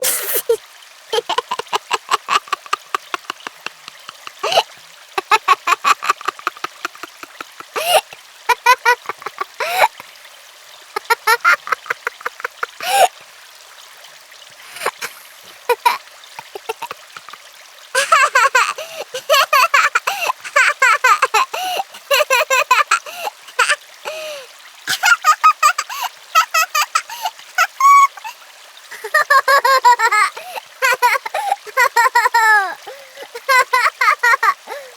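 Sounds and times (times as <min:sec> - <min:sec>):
child squealing: 0:00.0 - 0:00.6, 0:18.0 - 0:23.0, 0:23.6 - 0:28.4, 0:29.0 - 0:34.9
child giggling: 0:00.0 - 0:10.0, 0:11.0 - 0:13.1, 0:14.8 - 0:17.3, 0:18.0 - 0:34.9.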